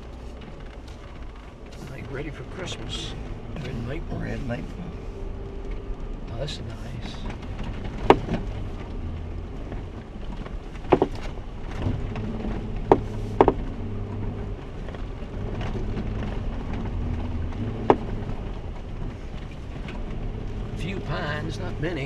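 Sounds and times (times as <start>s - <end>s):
off-road vehicle engine running: 0.0s - 22.0s
sharp knocks: 7.2s - 8.4s.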